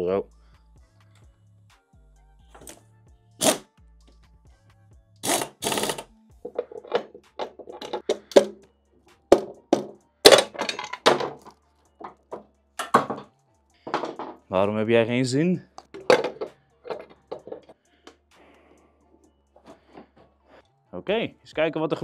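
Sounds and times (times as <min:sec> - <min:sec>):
background music: 0:00.0 - 0:22.0
metal parts knocking and clattering: 0:06.5 - 0:08.6, 0:09.4 - 0:13.3, 0:13.9 - 0:14.4, 0:15.9 - 0:17.8.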